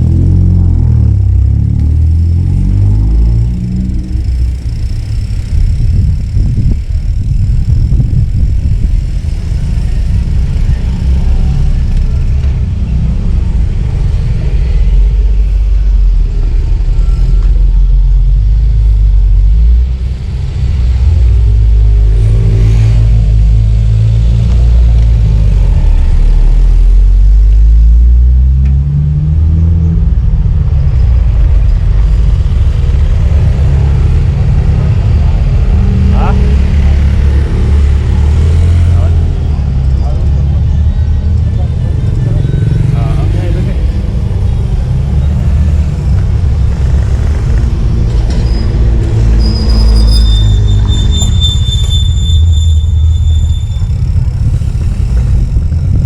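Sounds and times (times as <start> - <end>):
wind buffeting microphone: 4.2 - 16.0, 53.7 - 56.0.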